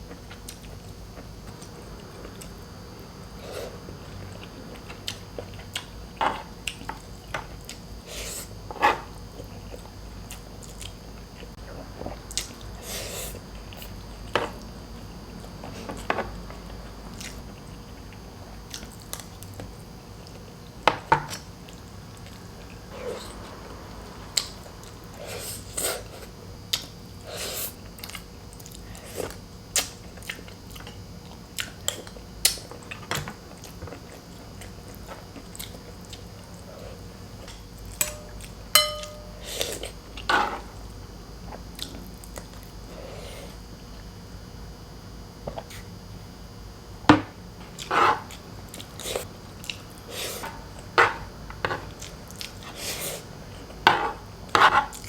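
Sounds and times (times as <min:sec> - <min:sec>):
person chewing food: 0:03.7 - 0:08.6
short ringing clink: 0:38.0 - 0:39.4.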